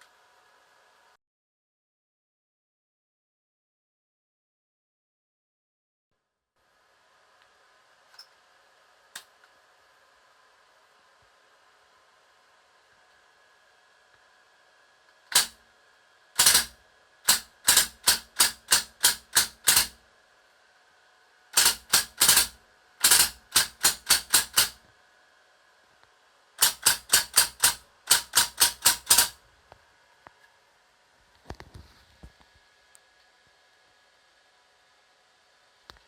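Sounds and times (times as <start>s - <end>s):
airsoft gun shots: 16.4s - 16.7s, 17.3s - 20.0s.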